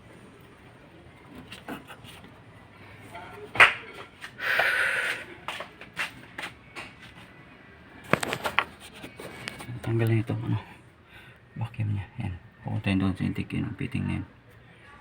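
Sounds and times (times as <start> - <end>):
scraping rustle: 8.1 - 10.0.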